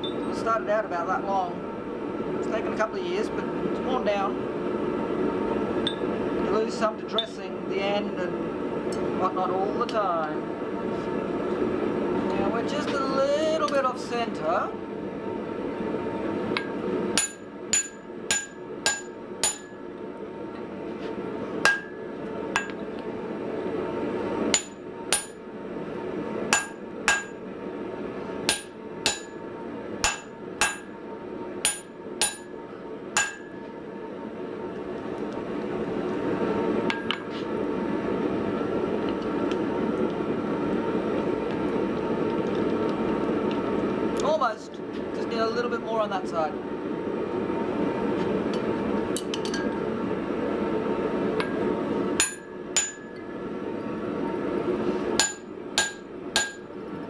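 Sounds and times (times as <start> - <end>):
hammer blows ringing on metal: 17.2 - 19.8, 21.7 - 22.8, 24.6 - 25.4, 26.6 - 27.4, 28.5 - 29.4, 30.0 - 31.0, 31.7 - 32.6, 33.2 - 33.6, 52.2 - 53.2, 55.2 - 56.7.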